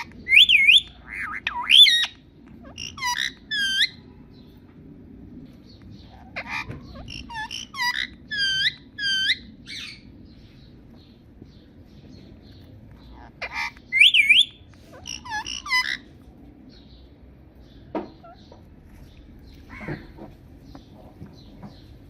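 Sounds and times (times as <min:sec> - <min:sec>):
parakeet shrill whistled calls: 0:00.0 - 0:04.0, 0:06.1 - 0:10.0, 0:13.1 - 0:16.1
steady low hum: 0:00.0 - 0:22.0.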